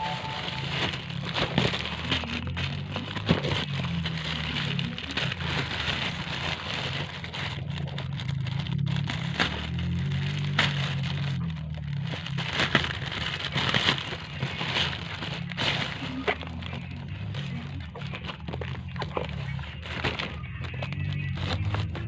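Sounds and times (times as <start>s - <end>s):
low steady hum: 0.0s - 4.1s
packaging crackling and rustling: 0.0s - 22.0s.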